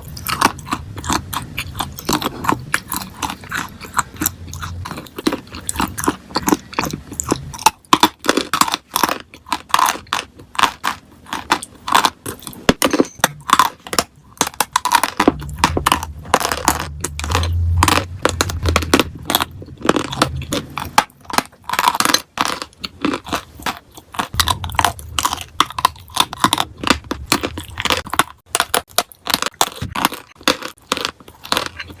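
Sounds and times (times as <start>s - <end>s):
dry clay crunching and crackling: 0.0s - 32.0s
low rumble: 15.1s - 21.8s, 24.3s - 28.9s.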